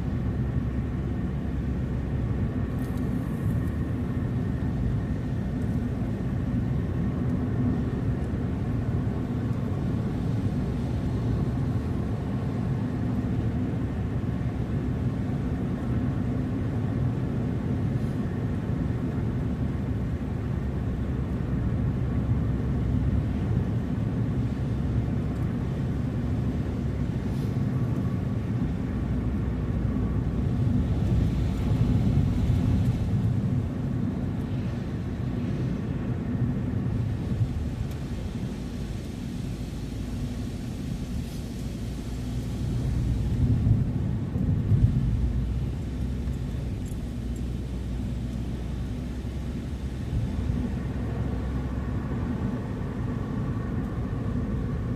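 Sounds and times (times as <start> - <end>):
car road and engine noise: 0.0 - 54.9
hiss: 37.4 - 43.4.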